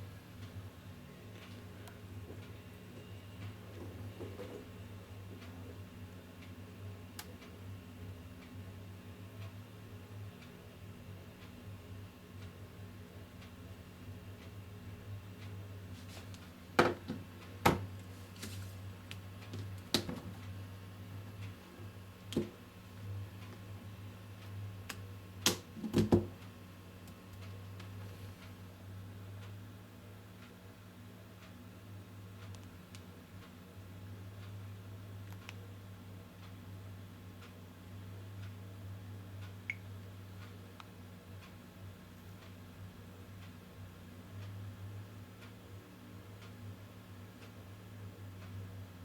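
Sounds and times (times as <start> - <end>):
low steady hum: 0.0 - 49.0
small clicks and ticks: 32.4 - 33.7, 35.2 - 35.7.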